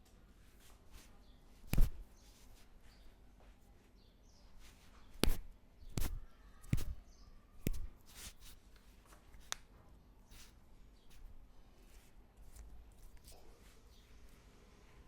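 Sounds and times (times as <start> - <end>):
hands slapping during massage: 1.7 - 2.1, 5.2 - 7.0, 7.6 - 8.5.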